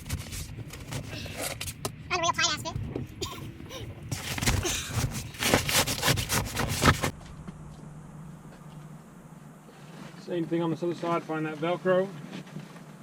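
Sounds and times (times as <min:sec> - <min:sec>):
low steady hum: 0:00.0 - 0:13.0
fabric rubbing and scraping: 0:03.2 - 0:07.2, 0:09.6 - 0:10.3.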